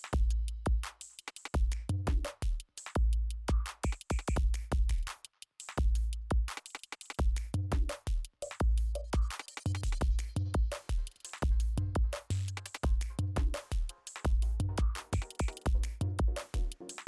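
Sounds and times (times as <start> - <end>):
electronic music with drum-machine beat: 7.2 - 17.0.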